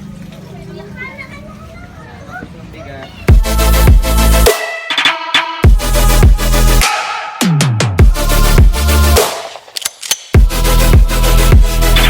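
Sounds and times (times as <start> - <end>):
electronic dance music: 3.3 - 9.6, 10.4 - 12.0.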